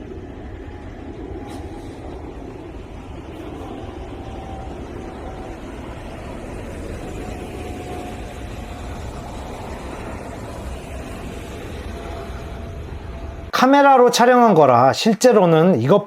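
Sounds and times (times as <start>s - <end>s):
road traffic: 0.0s - 14.8s
airliner rumble overhead: 0.0s - 14.9s.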